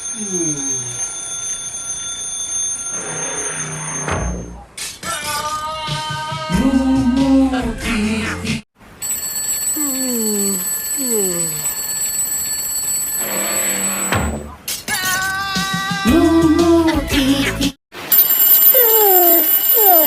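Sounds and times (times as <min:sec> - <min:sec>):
high ringing tones: 0:00.0 - 0:04.4, 0:09.0 - 0:14.5, 0:18.0 - 0:20.0.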